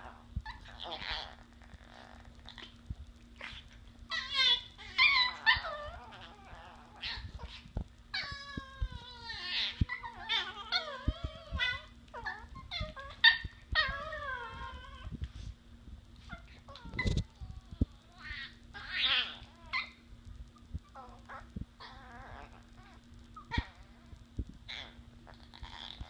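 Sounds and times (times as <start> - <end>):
puppies whining and yipping: 3.5 - 15.2, 16.2 - 20.0, 20.8 - 26.0.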